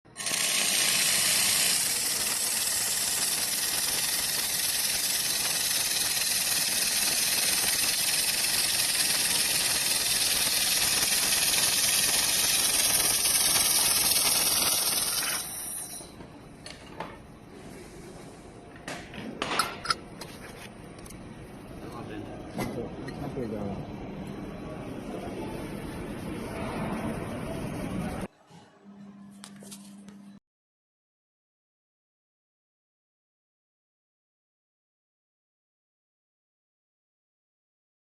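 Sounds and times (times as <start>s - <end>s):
laser welder loud hiss: 0.2s - 16.0s.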